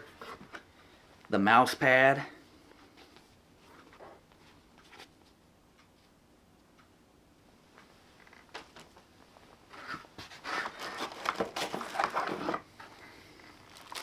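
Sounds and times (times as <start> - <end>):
mouse pad rustling and scraping: 9.7 - 13.0.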